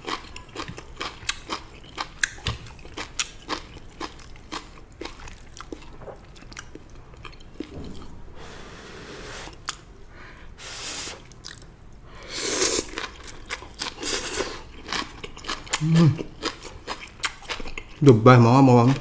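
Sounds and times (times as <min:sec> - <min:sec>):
crunching and wet chewing: 0:00.0 - 0:07.8, 0:11.2 - 0:18.1.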